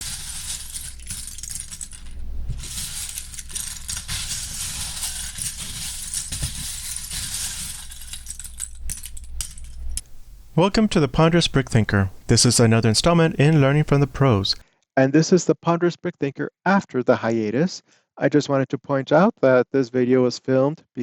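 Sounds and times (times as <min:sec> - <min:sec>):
plastic bricks rattling and clinking: 0:00.0 - 0:10.1.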